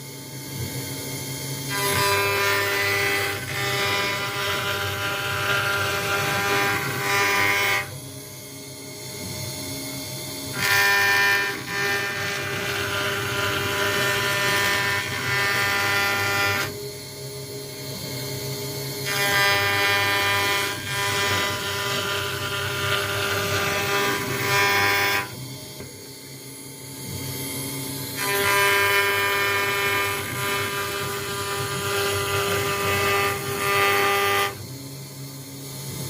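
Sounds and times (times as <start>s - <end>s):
router spindle whine: 0.0s - 36.0s
bit cutting acrylic: 1.7s - 8.0s, 10.6s - 16.8s, 19.0s - 25.4s, 28.2s - 34.6s.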